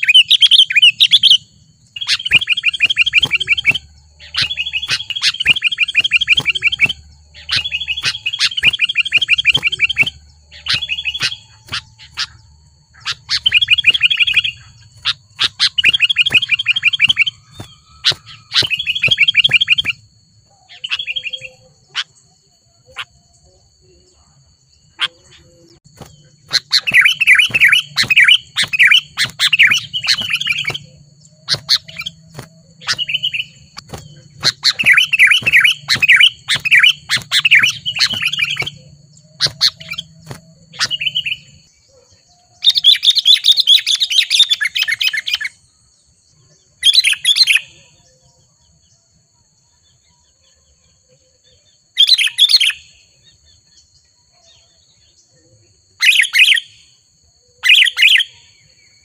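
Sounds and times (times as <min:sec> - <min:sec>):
bird chattering calls: 0:00.0 - 0:23.2, 0:24.9 - 0:41.7.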